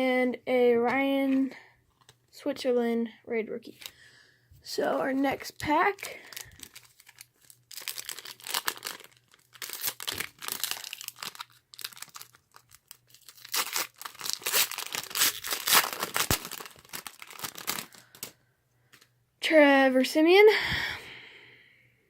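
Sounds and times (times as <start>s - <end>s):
foil wrapper tearing and crinkling: 5.9s - 18.3s.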